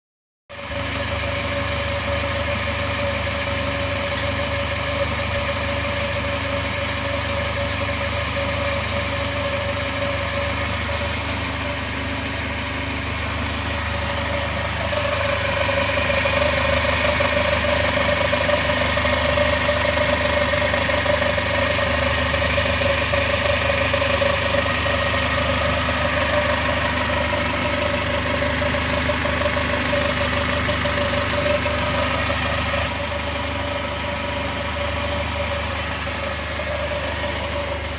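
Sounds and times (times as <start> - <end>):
car engine idling: 0.6 - 37.9.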